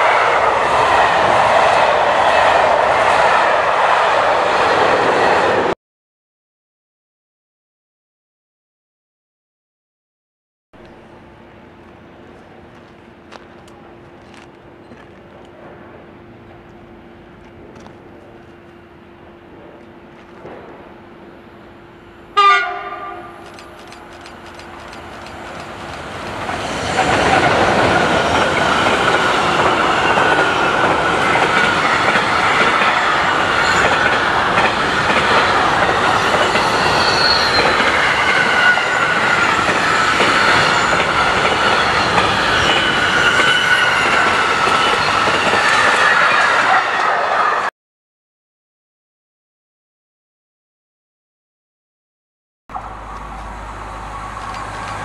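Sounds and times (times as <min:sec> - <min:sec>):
train wheels rushing on rail: 0:00.0 - 0:05.8, 0:10.8 - 0:47.7, 0:52.8 - 0:55.0
train horn blast: 0:22.3 - 0:23.4.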